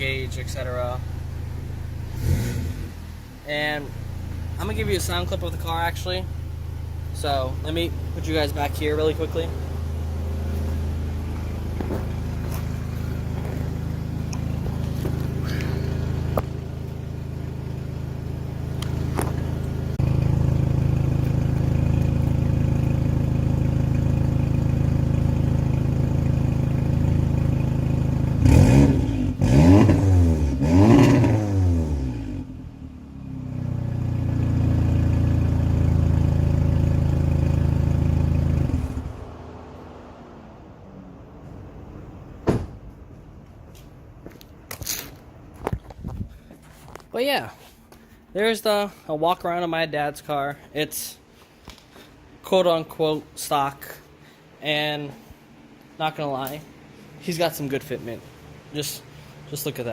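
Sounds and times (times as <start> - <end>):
car engine idling: 0.0 - 30.8, 31.6 - 44.7, 53.2 - 59.9
car engine revving: 0.0 - 42.1.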